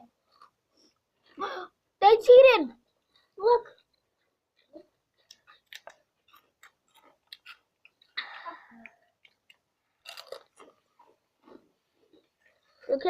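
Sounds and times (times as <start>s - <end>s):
people chewing crisp chips: 0.0s - 1.8s, 2.9s - 13.0s
breathy noise: 8.1s - 9.2s.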